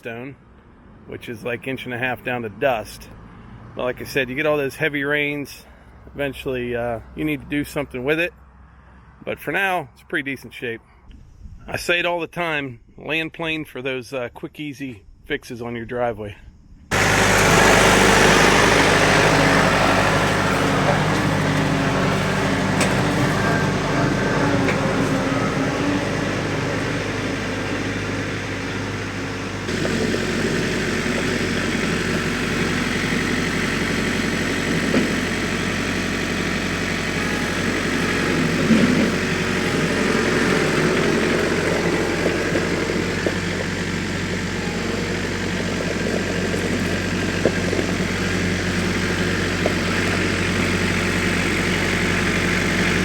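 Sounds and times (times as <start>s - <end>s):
tractor engine running: 16.9s - 53.0s.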